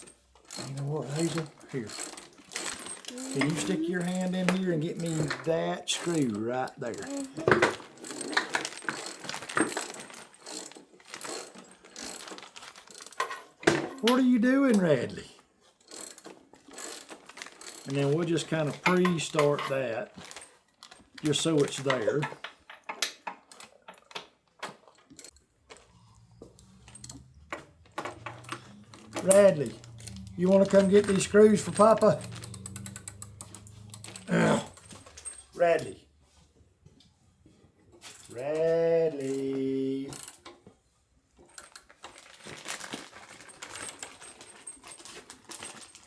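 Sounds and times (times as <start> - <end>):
metal hardware clinking: 0.0 - 12.4, 26.5 - 36.0
low steady hum: 25.7 - 35.6
metallic clicks of screws and tools: 26.5 - 35.6.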